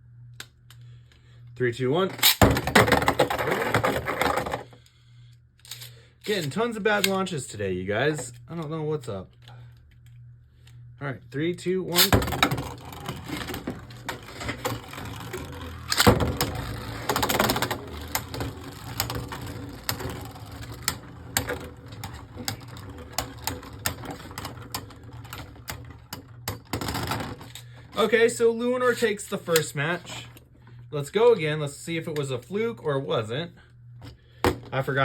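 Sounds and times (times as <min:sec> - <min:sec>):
spinning tops clashing and clicking: 0:11.9 - 0:27.6
spinning tops whirring: 0:11.9 - 0:30.3.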